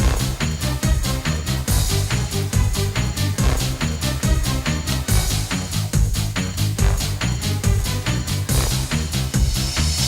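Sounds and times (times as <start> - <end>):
electronic music with steady beat: 0.0 - 10.0.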